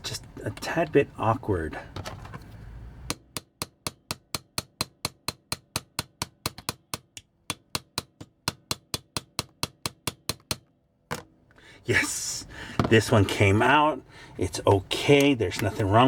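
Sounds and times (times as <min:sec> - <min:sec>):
small hammer tapping: 0:03.1 - 0:10.7.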